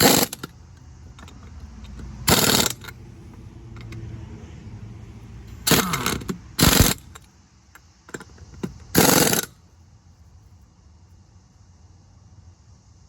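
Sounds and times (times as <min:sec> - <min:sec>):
power tool bursts: 0:00.0 - 0:00.5, 0:02.2 - 0:02.9, 0:05.6 - 0:07.3, 0:08.1 - 0:09.6.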